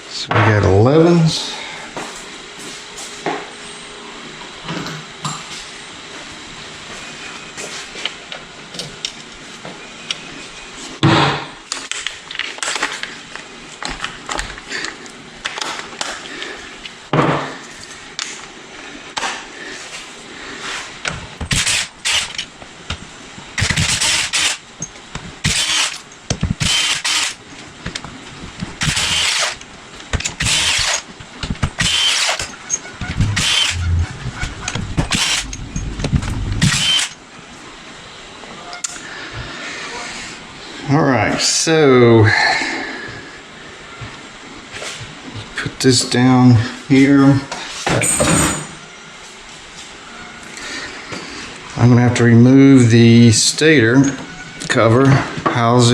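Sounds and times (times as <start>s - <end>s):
power tool bursts: 21.5s - 22.4s, 23.6s - 24.6s, 25.4s - 27.4s, 28.8s - 29.6s, 30.2s - 31.1s, 31.8s - 32.6s, 33.2s - 33.9s, 35.0s - 35.6s, 36.6s - 37.2s.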